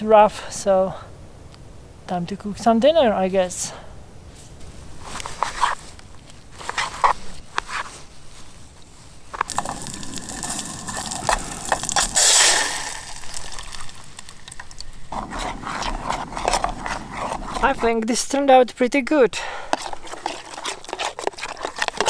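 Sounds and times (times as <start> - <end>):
steady hiss: 0.0 - 15.6
packaging crinkling and clicking: 9.4 - 17.6, 19.7 - 22.0.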